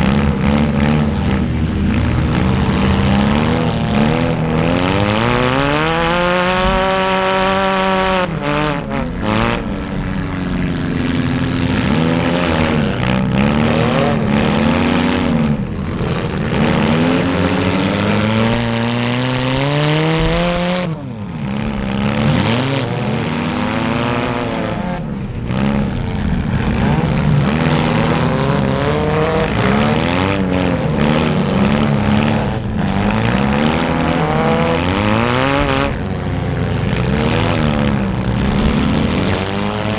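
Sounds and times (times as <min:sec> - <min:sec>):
small car engines revving: 0:00.0 - 0:39.9.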